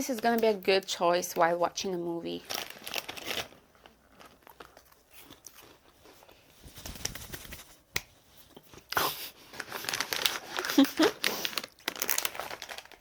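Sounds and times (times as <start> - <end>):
plastic wrapper crinkling: 2.3 - 7.7, 9.5 - 13.0
faint chewing: 3.8 - 6.5.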